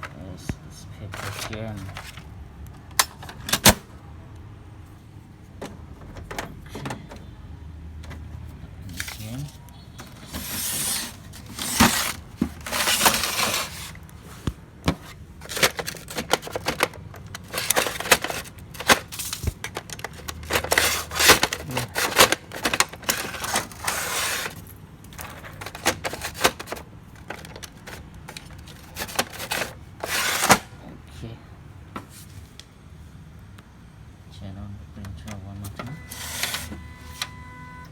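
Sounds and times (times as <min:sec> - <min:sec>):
paper rustling and crackling: 0:01.0 - 0:02.3, 0:08.1 - 0:30.7, 0:36.1 - 0:37.3
plastic printer parts clicking: 0:01.1 - 0:03.9, 0:05.6 - 0:07.3, 0:14.8 - 0:30.7.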